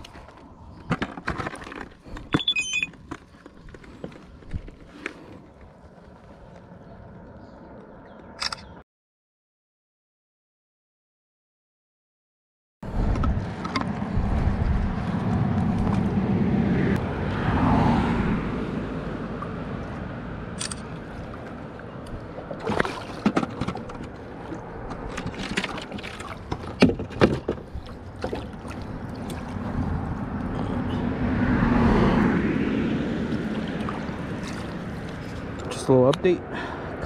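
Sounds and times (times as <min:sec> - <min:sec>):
low rumble: 0:12.8 - 0:20.6
water sloshing against boat hull: 0:21.0 - 0:30.2, 0:33.2 - 0:35.8.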